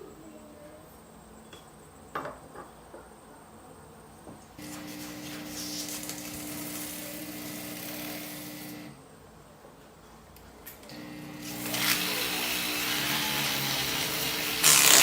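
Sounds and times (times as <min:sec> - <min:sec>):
electric power tool running: 0:04.6 - 0:09.0, 0:10.9 - 0:15.0.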